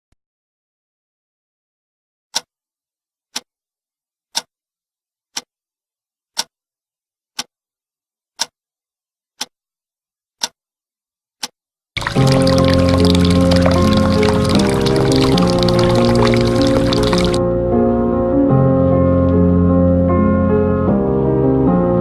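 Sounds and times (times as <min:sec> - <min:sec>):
sharp ticks: 0:12.0 - 0:17.4.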